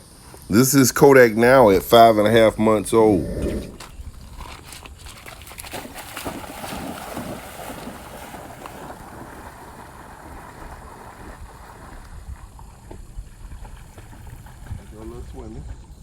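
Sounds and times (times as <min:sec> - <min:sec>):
wind rumbling on microphone: 0:02.4 - 0:16.0
dog swimming splashing water: 0:03.7 - 0:16.0.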